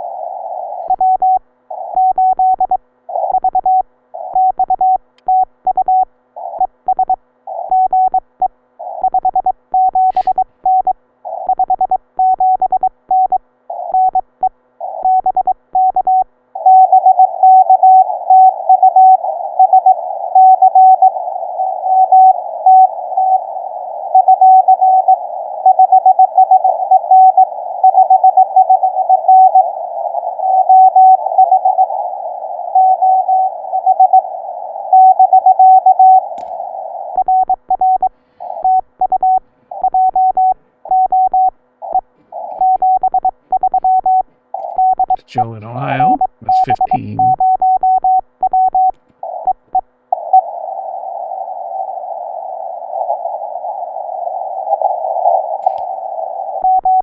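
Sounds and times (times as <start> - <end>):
receiver hiss: 0.0 - 12.6, 15.8 - 57.0
morse code tones: 9.1 - 14.2, 37.2 - 49.8, 56.6 - 57.0.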